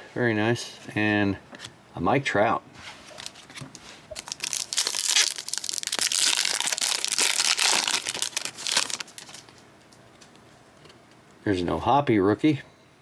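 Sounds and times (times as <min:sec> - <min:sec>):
wrapper tearing and crinkling: 0:04.2 - 0:09.6.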